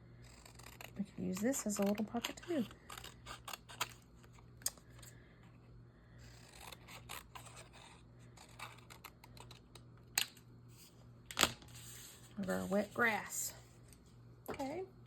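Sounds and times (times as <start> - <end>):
scissors cutting paper: 0.2 - 4.0, 6.2 - 9.6.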